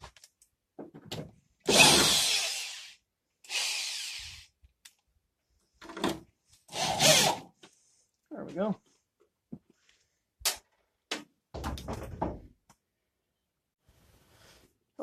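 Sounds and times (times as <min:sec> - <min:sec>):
power drill driving screws into metal: 0:01.7 - 0:04.5, 0:06.7 - 0:07.5.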